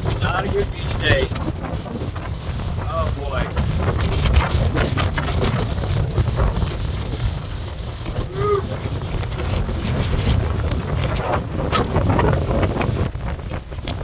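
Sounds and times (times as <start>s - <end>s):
gusty wind buffeting microphone: 0.0s - 14.0s
short pitched cry: 8.3s - 8.7s.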